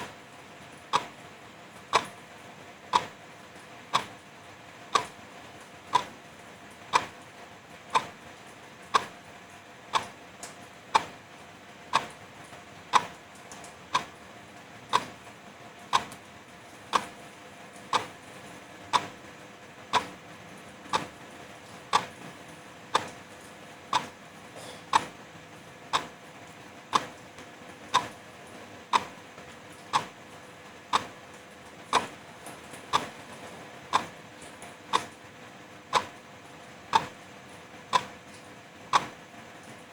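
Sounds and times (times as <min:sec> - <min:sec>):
wall clock ticking: 0:00.0 - 0:00.2, 0:00.9 - 0:01.2, 0:01.9 - 0:02.2, 0:02.9 - 0:03.2, 0:03.9 - 0:04.3, 0:04.9 - 0:06.2, 0:06.8 - 0:07.3, 0:07.9 - 0:08.2, 0:08.8 - 0:09.2, 0:09.9 - 0:11.2, 0:11.9 - 0:12.2, 0:12.8 - 0:13.2, 0:13.9 - 0:14.2, 0:14.9 - 0:15.2, 0:15.9 - 0:16.3, 0:16.9 - 0:17.2, 0:17.8 - 0:19.2, 0:19.9 - 0:20.2, 0:20.9 - 0:21.3, 0:21.9 - 0:22.3, 0:22.9 - 0:23.3, 0:23.9 - 0:24.2, 0:24.9 - 0:25.3, 0:25.9 - 0:26.3, 0:26.9 - 0:27.2, 0:27.9 - 0:28.3, 0:28.9 - 0:29.2, 0:29.9 - 0:30.2, 0:30.9 - 0:31.2, 0:31.8 - 0:35.2, 0:35.9 - 0:38.3, 0:38.9 - 0:39.2.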